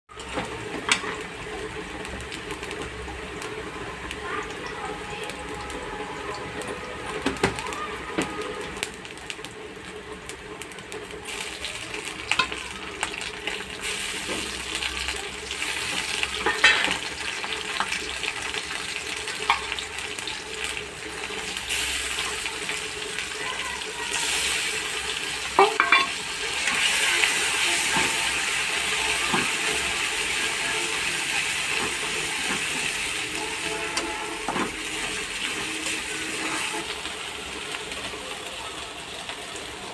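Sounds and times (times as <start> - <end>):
food sizzling in a pan: 0.1 - 39.9
stirring in a pan: 11.2 - 38.2.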